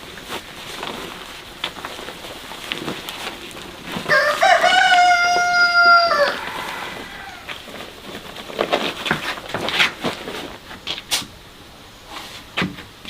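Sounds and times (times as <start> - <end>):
rooster crowing: 4.1 - 7.6.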